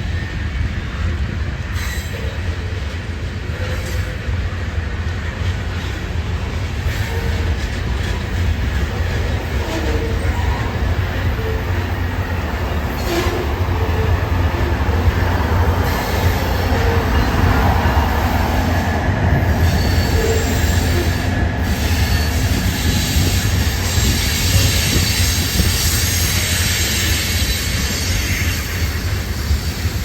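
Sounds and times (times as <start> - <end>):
freight train cars rumbling past: 0.0 - 30.0
high-pitched wheel squeal: 19.5 - 30.0.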